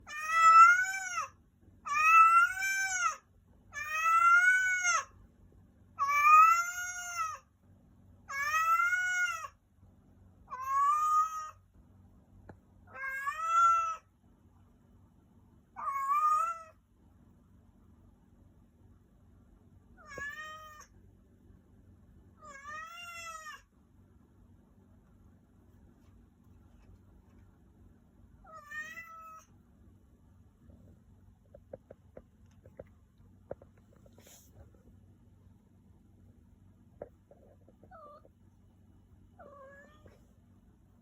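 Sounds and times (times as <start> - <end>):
cat meowing: 0.0 - 1.3, 1.9 - 5.1, 6.0 - 7.4, 8.3 - 9.5, 10.5 - 11.6, 12.9 - 14.0, 15.8 - 16.8, 20.0 - 20.9, 22.4 - 23.6, 28.4 - 29.5, 39.4 - 40.2.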